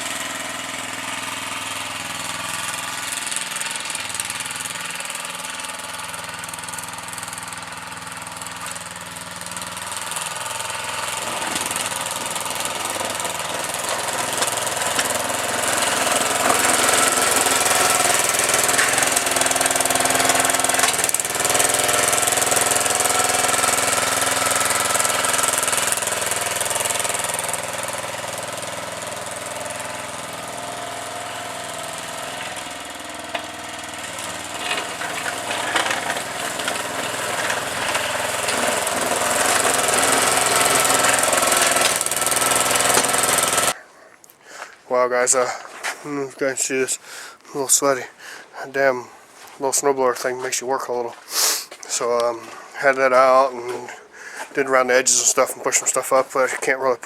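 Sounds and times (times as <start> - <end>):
small petrol engine running: 0.0 - 46.2
hiss: 51.3 - 51.7.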